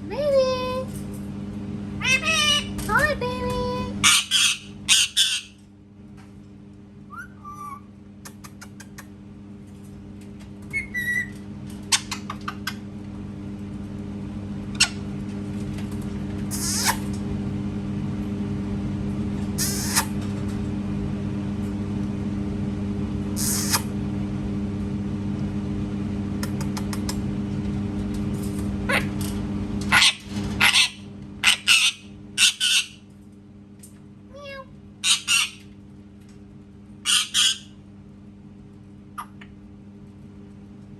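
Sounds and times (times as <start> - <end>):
machine hum: 0.0 - 40.9
parrot chirping: 2.0 - 2.7, 4.0 - 5.6, 7.1 - 7.9, 10.7 - 11.3, 16.5 - 17.0, 19.6 - 20.1, 23.4 - 23.8, 29.9 - 33.0, 34.4 - 35.6, 37.1 - 37.8
parrot screeching: 2.0 - 2.7, 4.0 - 5.6, 7.1 - 7.9, 10.7 - 11.3, 16.5 - 17.1, 19.6 - 20.1, 23.4 - 23.8, 29.9 - 33.0, 34.4 - 35.6, 37.1 - 37.7.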